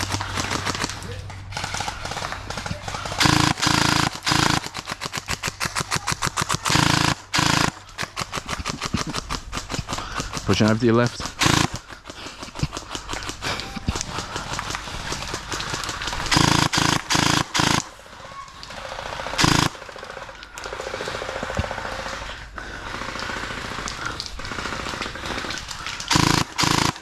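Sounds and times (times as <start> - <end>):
gel blasters firing full auto: 1.6 - 11.8, 15.6 - 17.9, 19.2 - 19.8, 23.1 - 27.0.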